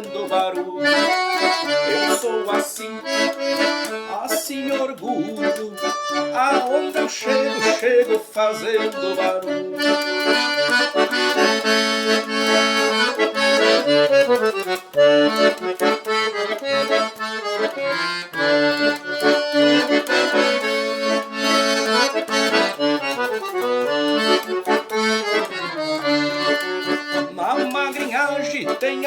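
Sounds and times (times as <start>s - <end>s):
accordion playing chords: 0.0s - 29.0s.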